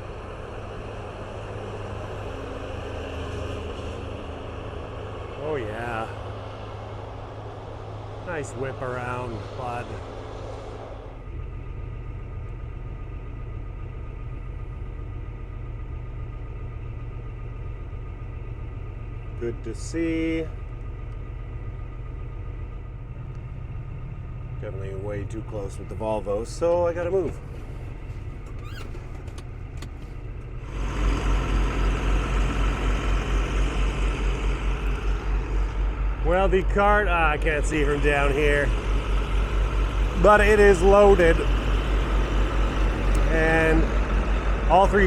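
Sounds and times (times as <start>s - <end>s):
diesel engine running: 0.0s - 45.0s
faint steady whines: 0.0s - 45.0s.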